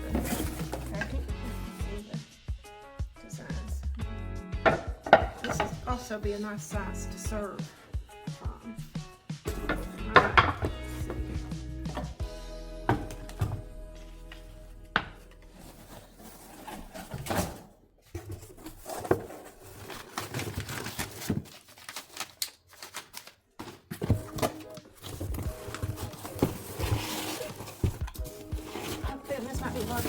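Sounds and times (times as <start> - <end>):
wooden boards knocking: 9.7 - 11.4
packing material rustling: 18.2 - 30.0.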